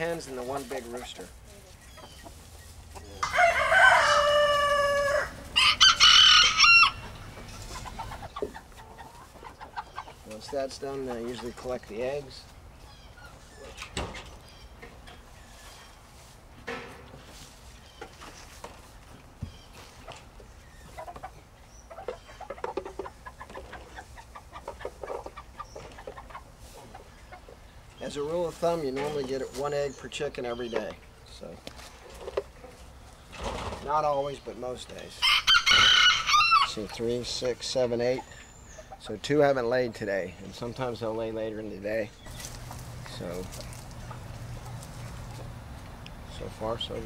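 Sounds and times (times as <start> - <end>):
hens clucking: 0.0 - 47.0
rooster crowing: 3.2 - 7.1, 35.2 - 36.7.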